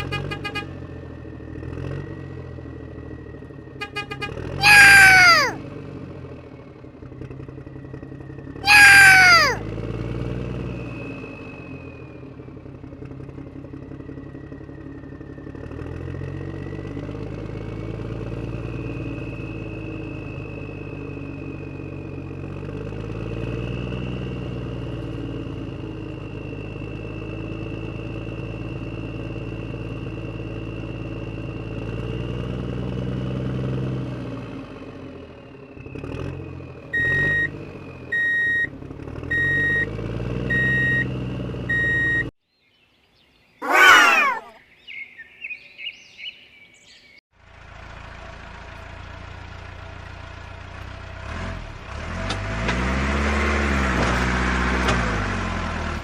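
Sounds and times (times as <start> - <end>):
low engine-like hum: 0.0 - 32.6.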